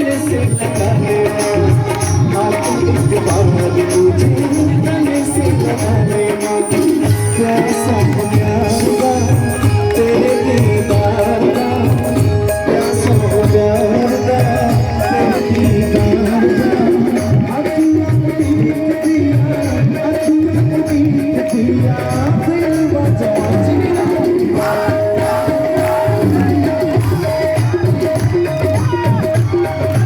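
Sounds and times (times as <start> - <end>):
sustained instrumental melody: 0.0 - 19.5
hand drums beating: 0.0 - 30.0.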